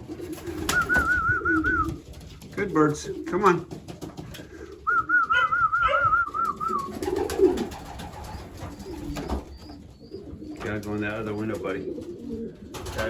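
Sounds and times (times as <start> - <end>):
pigeons cooing: 0.0 - 13.0
high wavering whistle: 0.7 - 1.9, 4.9 - 7.0.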